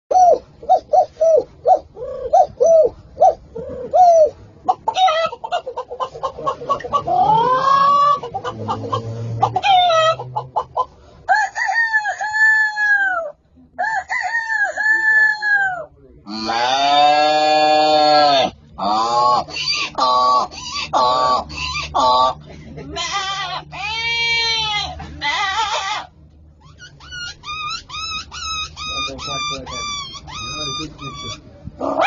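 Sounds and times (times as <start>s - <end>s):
person imitating chicken clucks: 3.5s - 10.9s, 16.3s - 26.1s.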